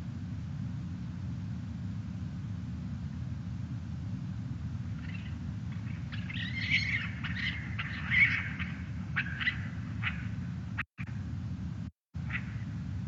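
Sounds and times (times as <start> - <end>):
steady low hum: 0.0 - 13.0
bird chirping: 5.0 - 10.9.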